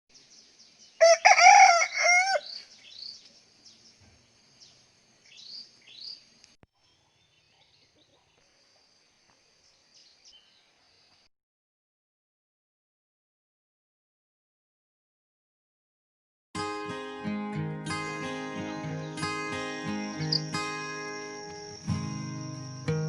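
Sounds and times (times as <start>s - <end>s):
rooster crowing: 1.0s - 2.6s
small birds chirping: 2.4s - 11.3s, 18.3s - 23.0s.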